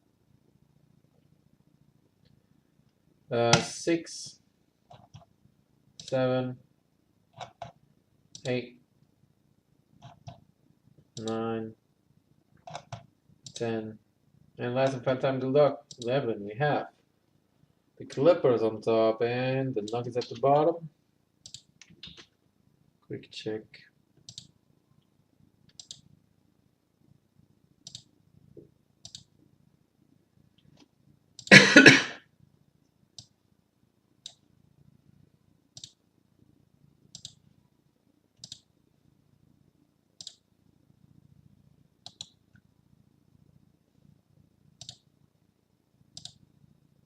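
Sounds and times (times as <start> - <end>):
faint low hum: 0.0 - 47.0
computer mouse clicks: 4.9 - 5.3, 6.0 - 6.2, 7.3 - 8.6, 10.0 - 10.4, 11.1 - 11.4, 12.6 - 13.7, 21.4 - 22.3, 24.2 - 24.6, 25.6 - 26.1, 27.8 - 28.1, 29.0 - 29.3, 33.2 - 33.4, 34.2 - 34.5, 35.7 - 36.0, 37.1 - 37.4, 38.4 - 38.7, 40.2 - 40.4, 42.0 - 42.7, 44.8 - 45.1, 46.1 - 46.4.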